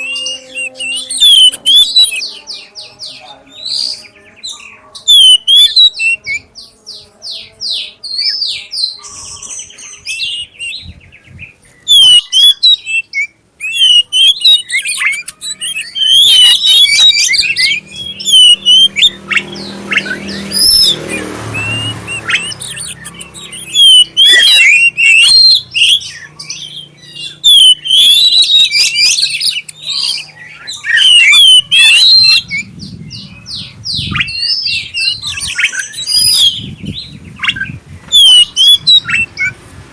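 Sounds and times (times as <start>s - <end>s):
bird singing whistles and trills: 0.0s - 6.8s, 7.4s - 39.6s
low rumbling noise: 31.6s - 39.9s.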